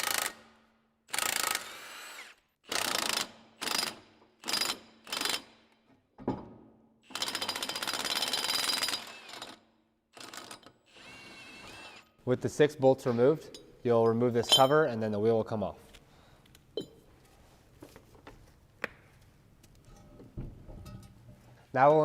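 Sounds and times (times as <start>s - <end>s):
impact wrench bursts: 1.1s - 5.6s.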